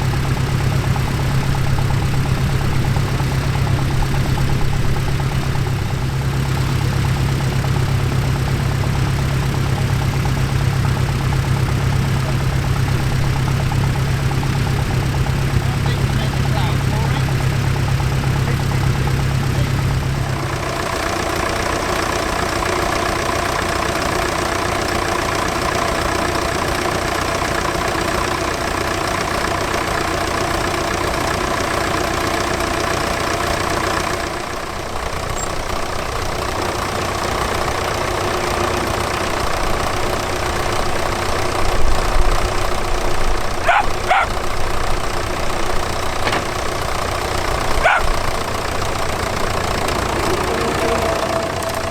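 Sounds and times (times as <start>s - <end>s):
tractor engines running: 0.0s - 51.9s
dog barking: 43.6s - 44.4s, 47.7s - 48.3s.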